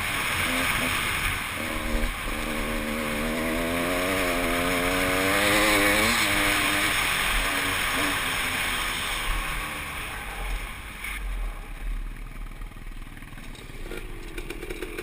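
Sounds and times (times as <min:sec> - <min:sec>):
dirt bike engine revving: 0:00.0 - 0:10.4, 0:13.5 - 0:15.0.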